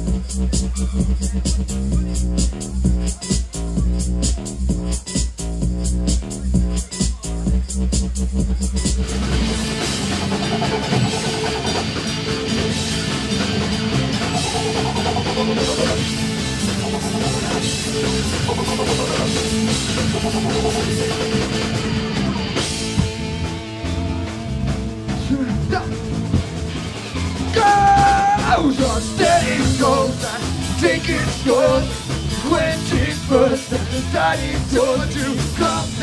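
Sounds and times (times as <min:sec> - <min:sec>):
rock band playing: 0:08.1 - 0:36.0.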